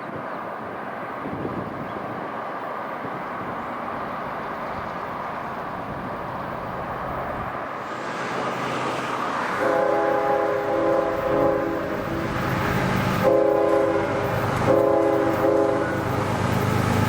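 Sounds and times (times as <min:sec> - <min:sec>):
diesel locomotive rumble: 0:01.0 - 0:17.0
locomotive air horn: 0:09.5 - 0:12.4, 0:13.2 - 0:16.1.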